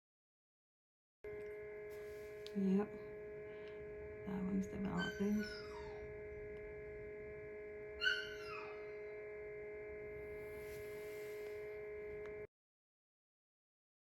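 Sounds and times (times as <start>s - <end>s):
electrical hum: 1.3s - 12.5s.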